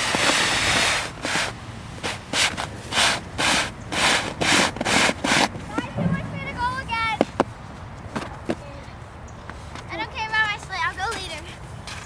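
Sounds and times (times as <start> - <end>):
sled scraping over snow: 0.0 - 7.2.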